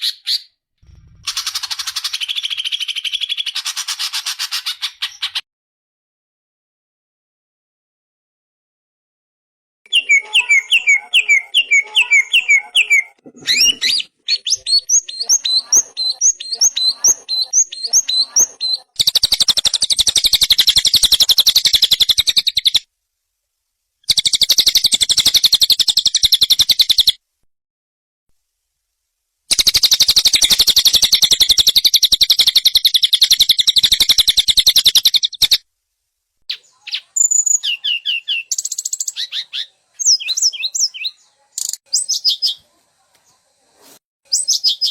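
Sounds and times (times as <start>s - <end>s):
songbird chirping and trilling: 1.3s - 5.4s, 9.9s - 22.8s, 24.0s - 27.2s, 29.5s - 35.6s, 36.5s - 43.4s, 44.3s - 44.9s.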